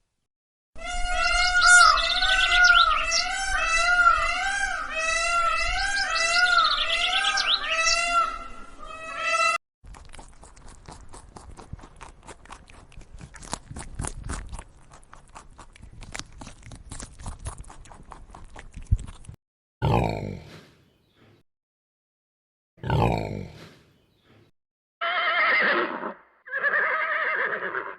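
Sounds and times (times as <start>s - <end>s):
high arching animal cries: 0.8s - 9.6s, 25.0s - 27.9s
crunching clicks: 9.9s - 19.3s.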